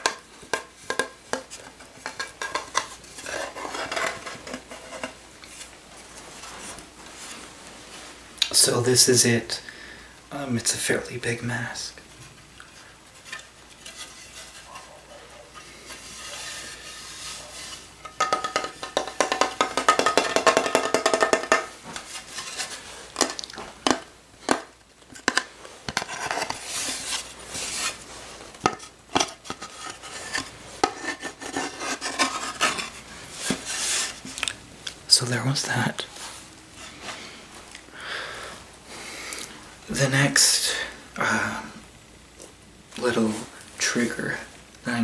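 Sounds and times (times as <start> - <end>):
tapping on wooden mask: 0.0 - 2.9, 18.1 - 21.8.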